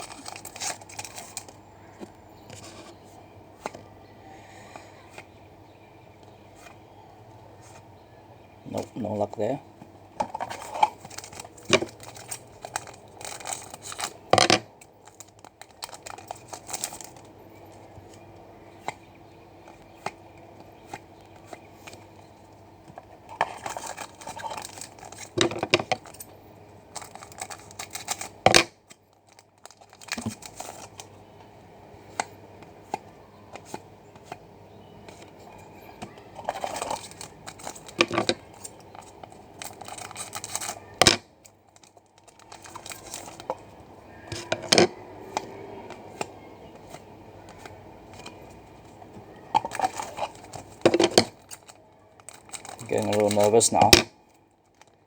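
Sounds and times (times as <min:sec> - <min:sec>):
card pack wrappers tearing: 0:00.0 - 0:01.6, 0:10.6 - 0:14.2, 0:15.0 - 0:17.3, 0:23.4 - 0:25.4, 0:26.9 - 0:28.4, 0:29.3 - 0:31.0, 0:36.1 - 0:41.1, 0:42.2 - 0:43.5, 0:49.5 - 0:54.0
cards being handled: 0:00.0 - 0:03.0, 0:10.2 - 0:18.2, 0:35.1 - 0:41.2, 0:52.2 - 0:54.0.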